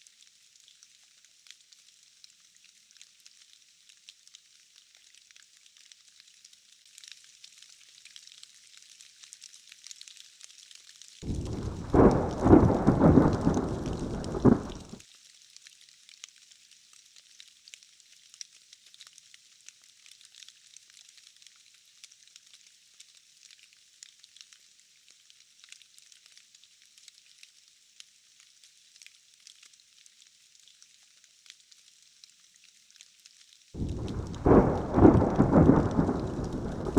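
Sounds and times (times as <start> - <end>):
rain hissing: 11.2 - 15.0, 33.8 - 36.9
thunderclap rumbling: 11.2 - 15.0, 33.8 - 36.9.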